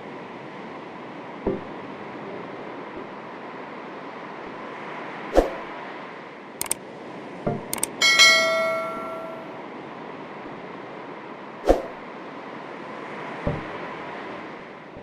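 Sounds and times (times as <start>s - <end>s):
gentle waves washing: 3.5s - 10.3s
ringing metallic clang: 7.9s - 9.6s.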